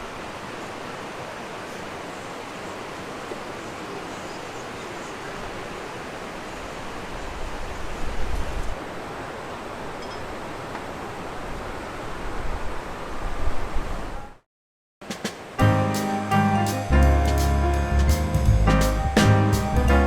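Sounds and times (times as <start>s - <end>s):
steady outdoor rushing noise: 15.0s - 20.0s.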